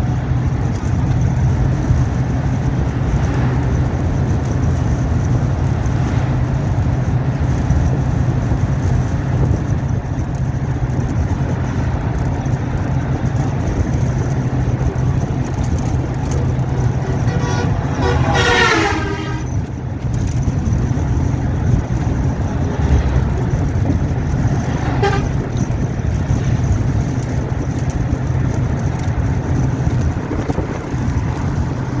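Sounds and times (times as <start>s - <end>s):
vehicle engine rumble: 0.0s - 32.0s
vehicle horn: 14.8s - 19.8s, 24.4s - 25.8s.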